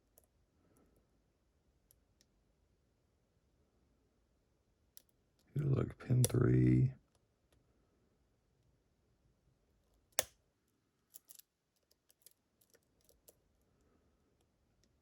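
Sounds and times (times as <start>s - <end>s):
lock pick clicking on pins: 11.1s - 13.4s.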